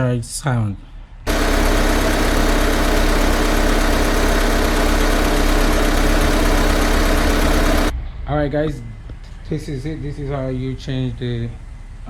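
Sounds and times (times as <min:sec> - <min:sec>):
car engine idling: 0:01.3 - 0:07.9.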